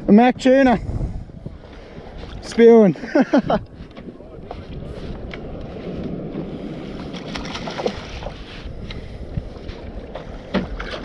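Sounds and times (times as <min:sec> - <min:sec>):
wind on microphone: 0:00.0 - 0:11.0
water washing around a kayak: 0:05.8 - 0:09.1.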